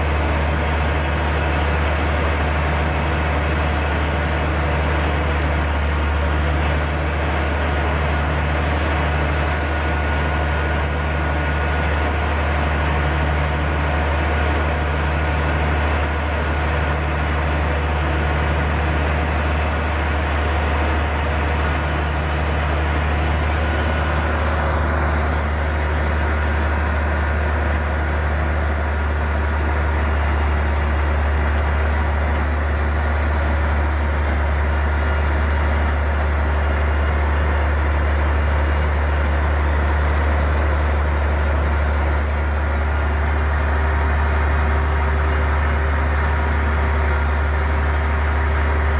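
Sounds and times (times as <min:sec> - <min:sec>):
heavy diesel engine running: 0:00.0 - 0:48.9.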